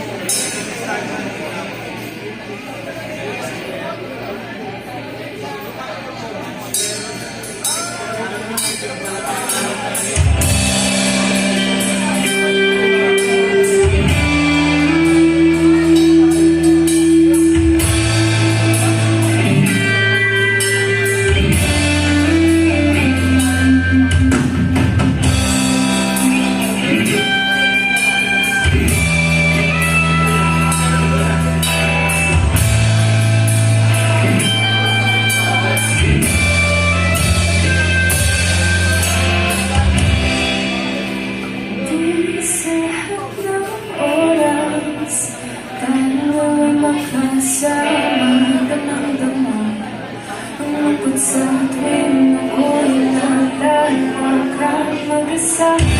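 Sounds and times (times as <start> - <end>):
rock band playing: 0.0 - 1.5, 6.7 - 55.9
drum kit with cymbals: 0.1 - 1.1, 6.7 - 41.7
electric guitar: 8.6 - 55.9.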